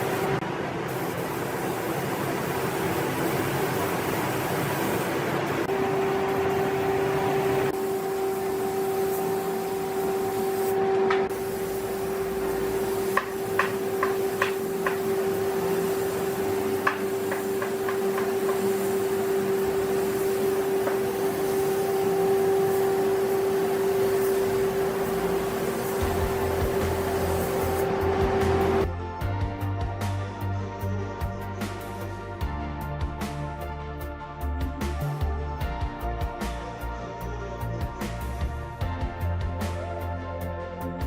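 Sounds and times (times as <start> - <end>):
constant mechanical noise: 0.0 - 29.2.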